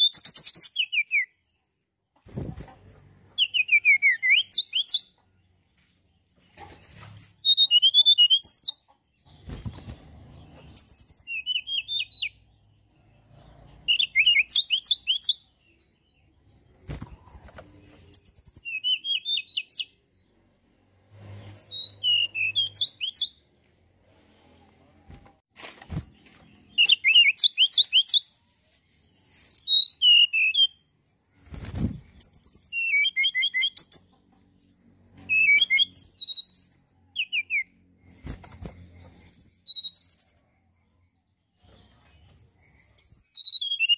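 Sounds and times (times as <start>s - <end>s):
bird chirping and trilling: 0.0s - 1.6s, 2.4s - 5.2s, 7.2s - 20.2s, 21.3s - 23.4s, 25.9s - 28.3s, 29.3s - 34.2s, 35.2s - 40.6s, 42.6s - 43.9s.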